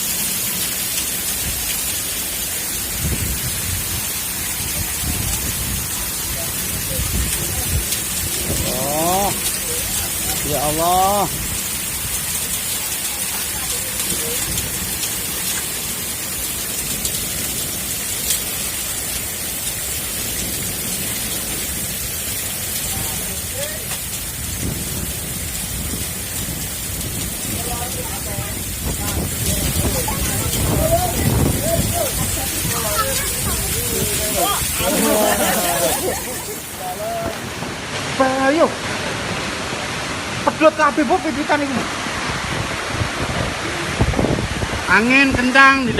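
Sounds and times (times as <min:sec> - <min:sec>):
heavy rain and hail hissing: 0:00.0 - 0:45.9
low rumbles: 0:20.0 - 0:35.0.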